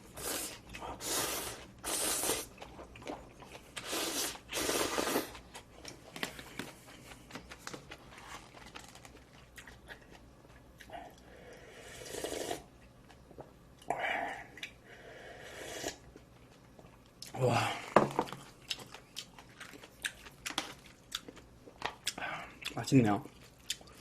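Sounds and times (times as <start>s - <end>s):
noodles being slurped: 0.1s - 5.6s
wet chewing: 18.3s - 24.0s.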